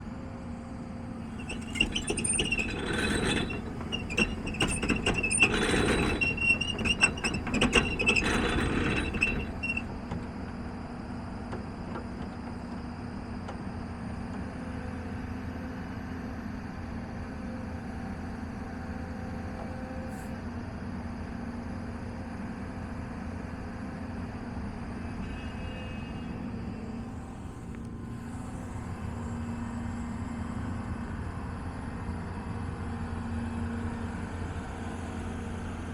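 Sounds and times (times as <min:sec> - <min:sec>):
excavator diesel engine hum: 0:00.0 - 0:35.9
high squeals: 0:01.3 - 0:10.0.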